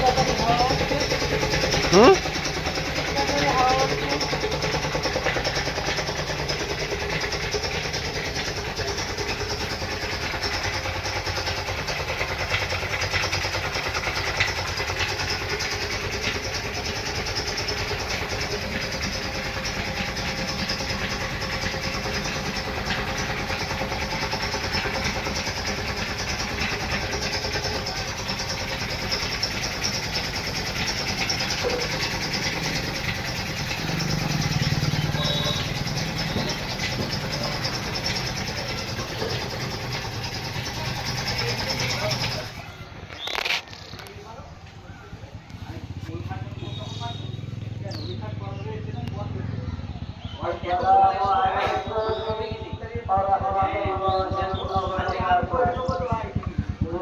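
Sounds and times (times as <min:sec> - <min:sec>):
machine motor running with hiss: 0:23.0 - 0:42.6.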